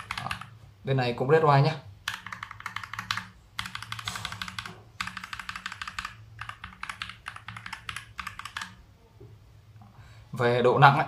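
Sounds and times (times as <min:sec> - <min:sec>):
mechanical keyboard typing: 0:00.0 - 0:00.5, 0:02.0 - 0:08.8.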